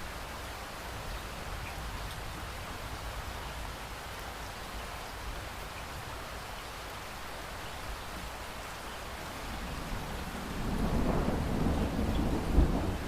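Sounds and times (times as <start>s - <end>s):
light rain falling: 0.0s - 13.0s
distant thunder rumbling: 9.6s - 13.0s.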